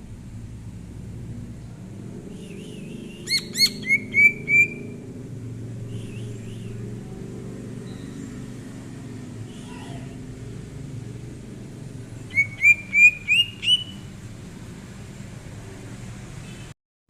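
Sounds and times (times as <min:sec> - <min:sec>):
steady low rumble: 0:00.0 - 0:15.7
bird singing whistled notes: 0:02.3 - 0:05.0, 0:05.9 - 0:06.8, 0:07.8 - 0:08.4, 0:12.2 - 0:14.1.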